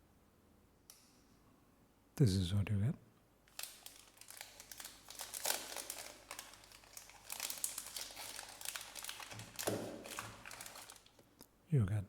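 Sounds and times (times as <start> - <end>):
plastic packaging crinkling: 3.5 - 11.3.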